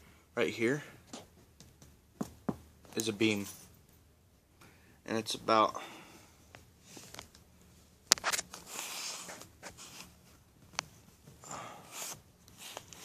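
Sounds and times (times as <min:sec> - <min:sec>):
breathy rustling: 0:11.0 - 0:13.0.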